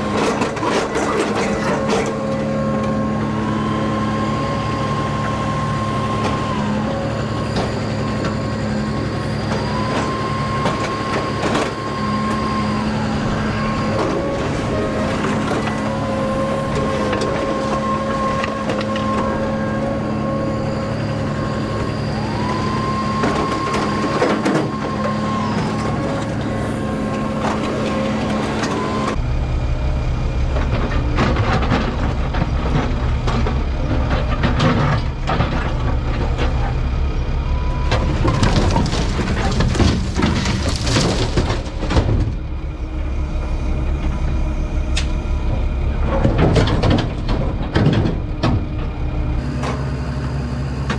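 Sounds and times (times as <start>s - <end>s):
excavator engine and hydraulics whine: 0.0s - 50.9s
debris clattering into truck bed: 38.0s - 42.4s.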